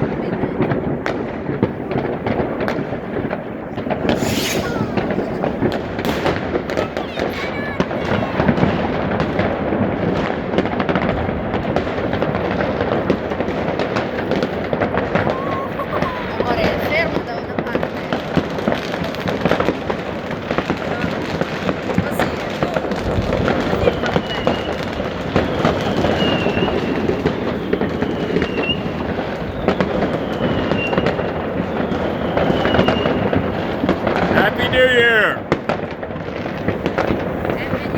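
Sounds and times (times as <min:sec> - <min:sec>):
fireworks and firecrackers bangs: 0:00.0 - 0:37.9
high firework whistle: 0:03.8 - 0:08.8, 0:21.3 - 0:34.9.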